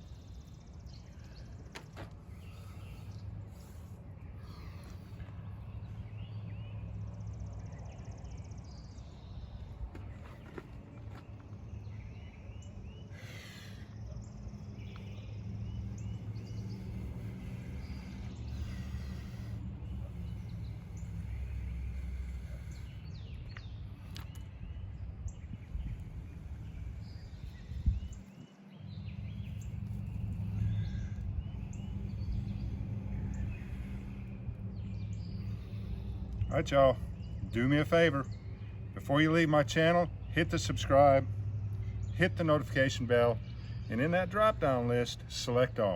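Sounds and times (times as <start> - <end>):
birds calling: 0.0 - 45.9
low outdoor rumble: 0.0 - 45.9.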